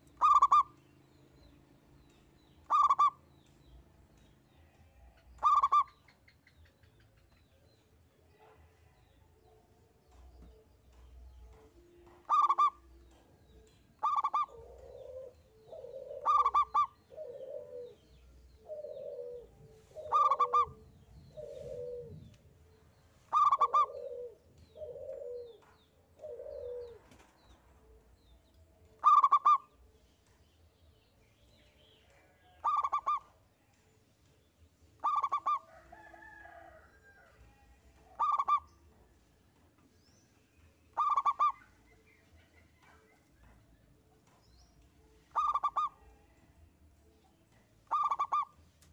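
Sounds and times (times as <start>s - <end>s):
zebra dove calling: 0.0s - 0.8s, 2.6s - 3.2s, 5.4s - 6.6s, 12.2s - 12.9s, 14.0s - 22.3s, 23.3s - 25.6s, 26.2s - 27.0s, 29.0s - 29.8s, 32.6s - 33.4s, 35.0s - 35.7s, 38.1s - 38.8s, 40.9s - 41.8s, 45.3s - 46.0s, 47.8s - 48.6s
lower cooing notes: 14.0s - 22.6s, 23.3s - 27.0s.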